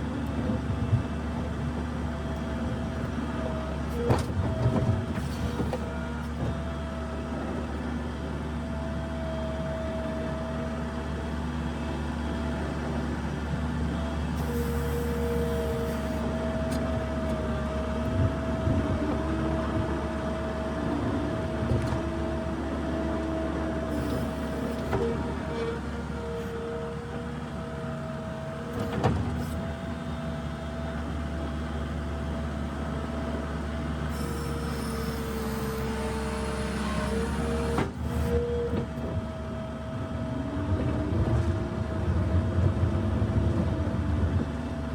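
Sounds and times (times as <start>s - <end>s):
skid steer engine hum: 0.0s - 44.9s.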